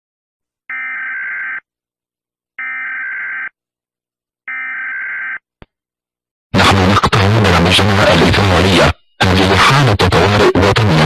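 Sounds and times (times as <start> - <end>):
electronic alarm beeps: 0.7 - 1.6, 2.6 - 3.5, 4.5 - 5.4.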